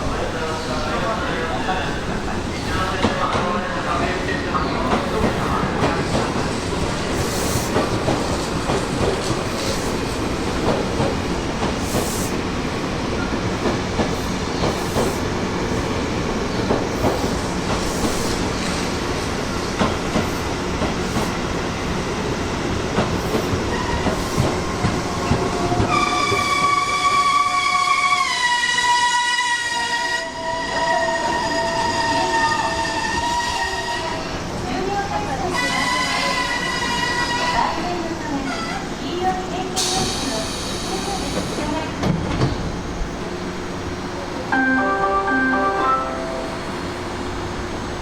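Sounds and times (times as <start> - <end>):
electric train running on track: 0.0 - 48.0
train horn falling in pitch: 44.5 - 46.7.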